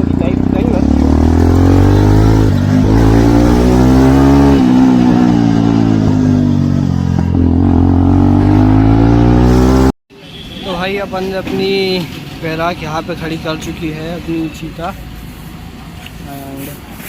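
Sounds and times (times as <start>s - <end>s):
loud motorcycle engine running: 0.0s - 9.9s.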